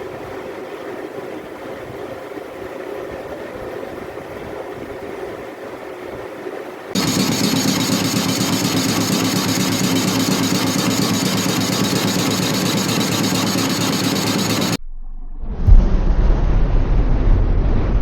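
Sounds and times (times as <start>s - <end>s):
machine humming and hissing: 7.0s - 14.8s.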